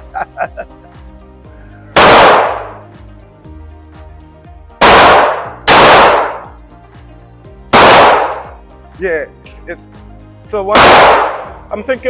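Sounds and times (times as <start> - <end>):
pistol shots: 2.0 - 2.8, 4.8 - 6.6, 7.7 - 8.6, 10.8 - 11.6.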